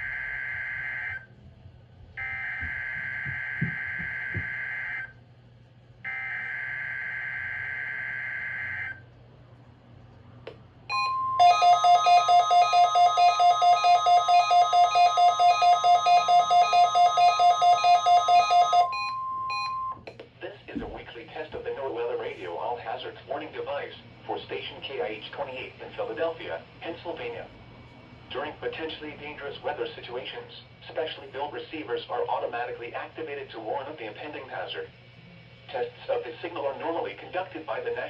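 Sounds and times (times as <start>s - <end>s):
steady warning alarm tone: 0.0s - 1.3s, 2.2s - 5.1s, 6.0s - 9.0s, 10.9s - 20.0s
rapid electronic alarm beeps: 10.9s - 20.0s.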